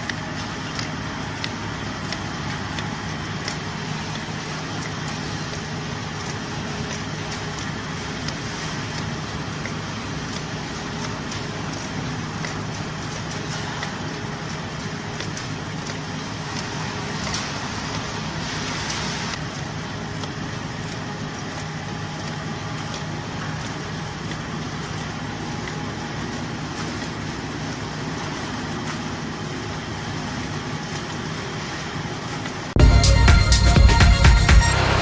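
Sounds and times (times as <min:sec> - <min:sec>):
machinery din: 0:32.8 - 0:35.0.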